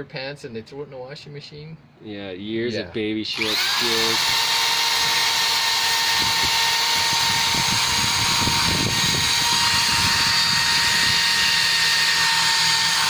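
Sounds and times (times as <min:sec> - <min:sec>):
electric drill whining: 0:03.3 - 0:13.0.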